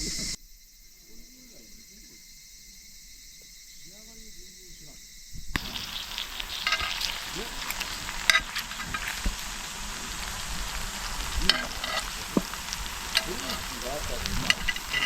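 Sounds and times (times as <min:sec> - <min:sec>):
meat sizzling on griddle: 0:05.5 - 0:15.0.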